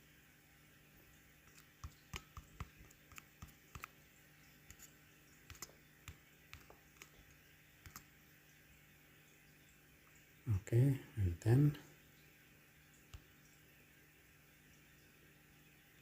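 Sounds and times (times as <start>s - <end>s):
faint steady hum: 0.0s - 16.0s
fingers tapping keys and touchscreen: 1.4s - 8.2s.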